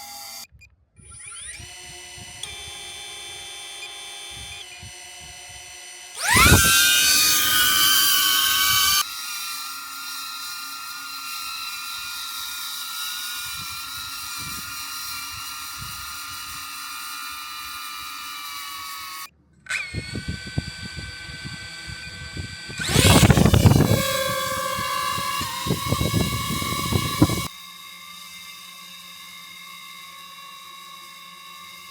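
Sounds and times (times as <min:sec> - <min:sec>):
drone propellers whining: 0:01.0 - 0:09.0, 0:19.7 - 0:27.5.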